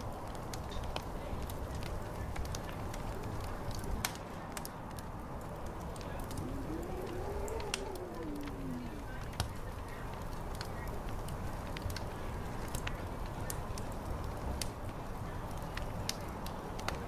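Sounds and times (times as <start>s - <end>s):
fire crackling and popping: 0.0s - 17.0s
wind: 0.0s - 17.0s
murmuring chatter: 0.8s - 17.0s
drawn-out pitched sound: 6.3s - 9.1s.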